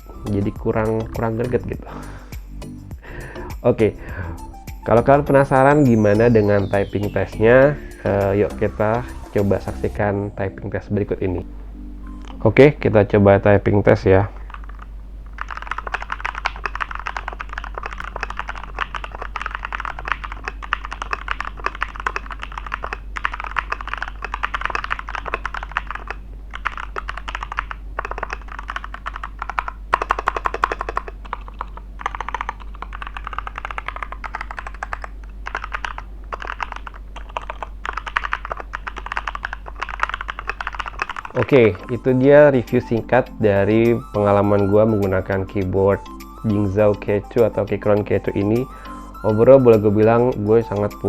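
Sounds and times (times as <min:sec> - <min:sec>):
faint low hum: 0:00.0 - 0:51.0
mechanical keyboard typing: 0:14.2 - 0:43.0.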